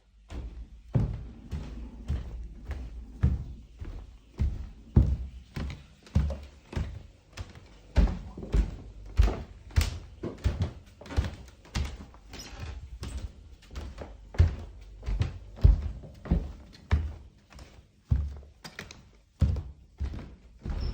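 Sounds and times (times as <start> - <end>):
footsteps walking: 0.0 - 20.9.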